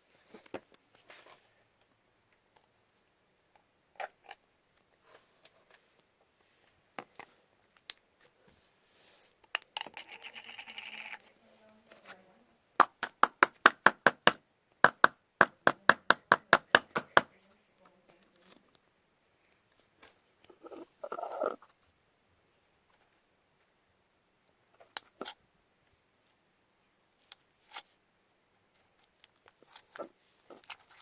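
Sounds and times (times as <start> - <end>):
slime squeak: 20.5 - 21.6.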